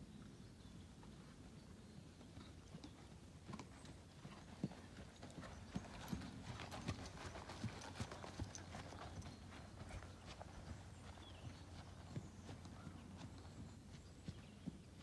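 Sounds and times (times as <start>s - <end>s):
horse hoofbeats clip-clop: 0.3s - 15.0s.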